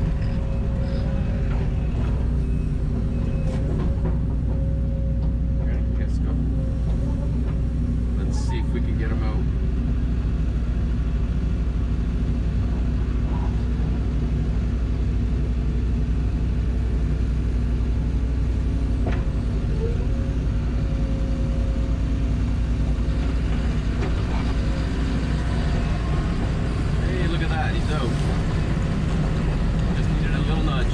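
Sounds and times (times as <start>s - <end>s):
faint creaking: 0.0s - 9.1s
excavator diesel engine running: 0.0s - 30.9s.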